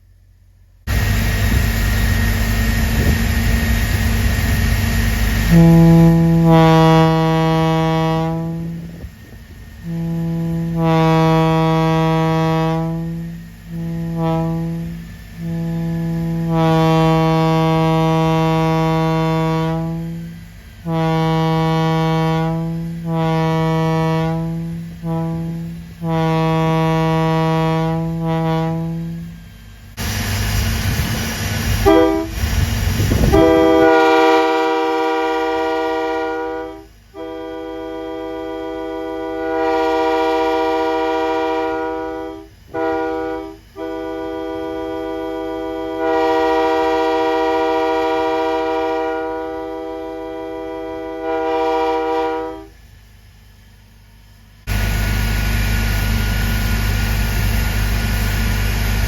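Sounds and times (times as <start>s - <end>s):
locomotive air horn blasts: 5.3s - 29.6s, 31.8s - 52.8s
rushing noise burst: 29.1s - 35.8s, 54.6s - 59.0s.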